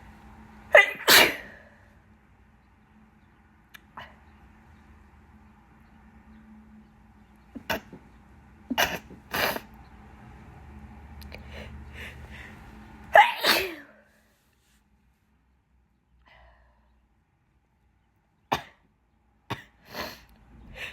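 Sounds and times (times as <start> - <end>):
woman sneezing: 0.8 - 1.6, 13.2 - 14.0.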